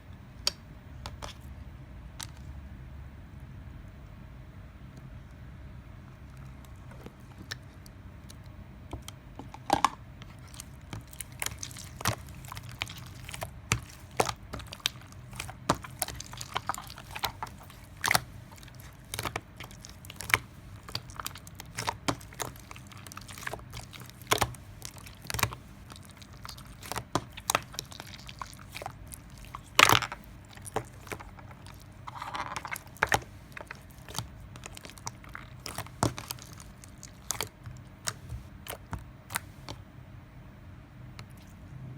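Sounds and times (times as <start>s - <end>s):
person chewing crunchy fruit: 10.2s - 39.8s.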